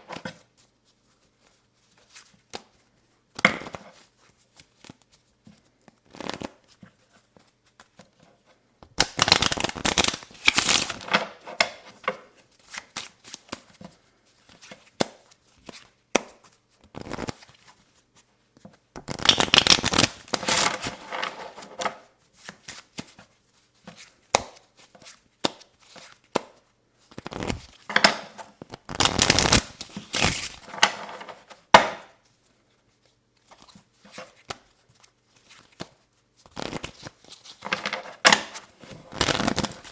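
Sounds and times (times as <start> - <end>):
playing cards shuffling: 6.0 - 8.0, 9.0 - 11.2, 16.9 - 17.8, 19.0 - 21.8, 27.1 - 31.6, 33.5 - 39.9
cards tapping and clicking: 19.0 - 20.6, 39.1 - 39.9.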